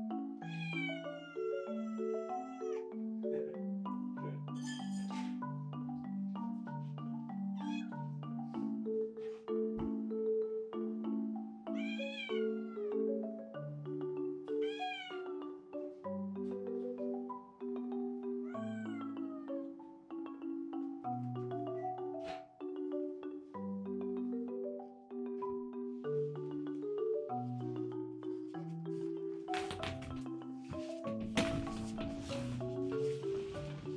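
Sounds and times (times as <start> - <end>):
marimba music: 0.0 - 33.9
cat meowing: 0.5 - 2.8, 7.6 - 7.9, 11.8 - 12.9, 14.6 - 15.2, 18.5 - 19.5.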